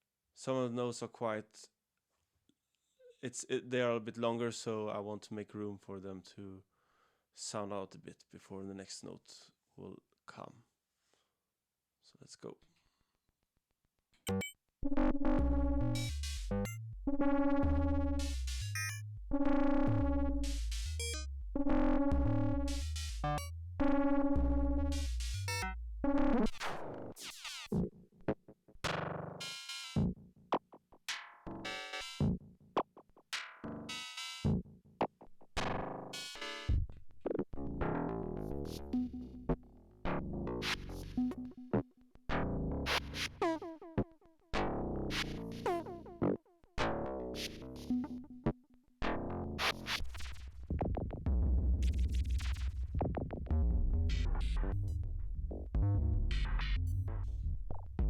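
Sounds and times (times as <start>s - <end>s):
synthetic percussion hits and clicks: 14.3s - 14.6s, 15.4s - 27.9s, 28.8s - 36.7s, 51.8s - 55.0s, 55.8s - 57.3s
heavy low tone: 15.4s - 26.2s.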